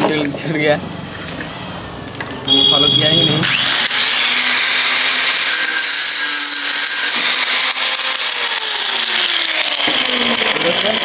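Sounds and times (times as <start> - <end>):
power cutting tool grinding: 3.4 - 11.0.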